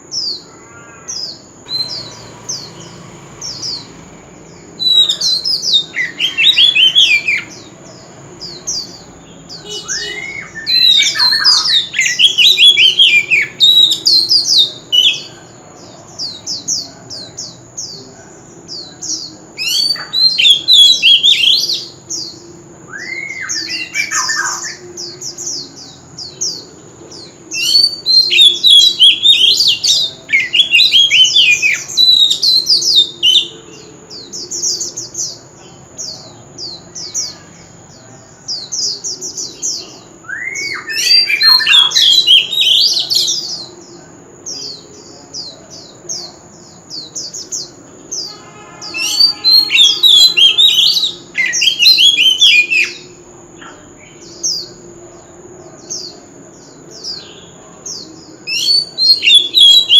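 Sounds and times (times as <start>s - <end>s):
bird whistling song: 1.2s - 15.4s, 19.6s - 26.6s, 27.5s - 35.4s, 39.4s - 43.7s, 46.9s - 54.8s, 58.4s - 59.9s.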